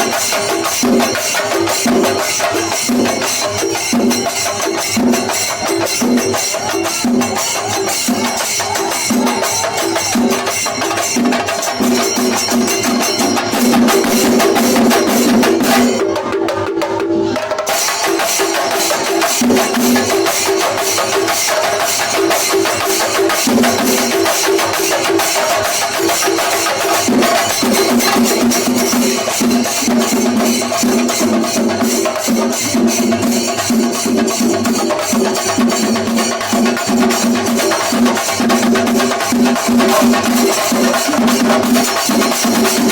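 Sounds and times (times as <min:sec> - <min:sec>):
fast drumming: 0:00.0 - 0:42.9
hand cymbals: 0:00.0 - 0:42.9.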